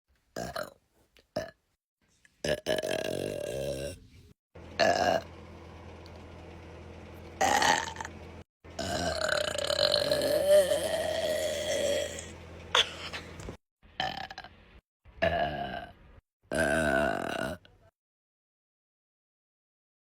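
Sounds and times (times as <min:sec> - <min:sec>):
woman burping: 0:08.8 - 0:13.2, 0:15.2 - 0:15.9, 0:16.5 - 0:17.7.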